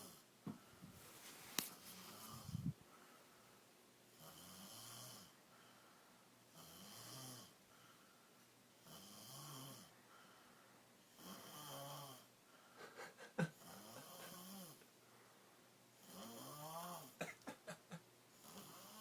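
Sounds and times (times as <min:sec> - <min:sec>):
person snoring: 0:02.0 - 0:02.7, 0:11.2 - 0:12.3, 0:13.0 - 0:14.8, 0:16.0 - 0:19.0.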